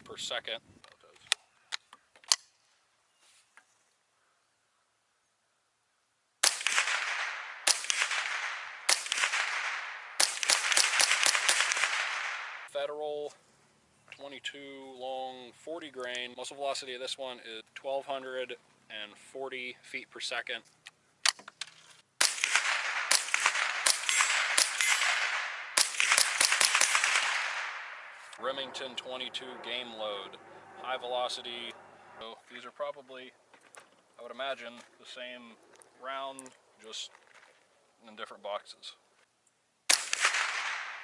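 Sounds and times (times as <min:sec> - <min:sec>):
rifle shots echoing: 0:06.4 - 0:12.7, 0:22.2 - 0:29.7, 0:39.9 - 0:41.0.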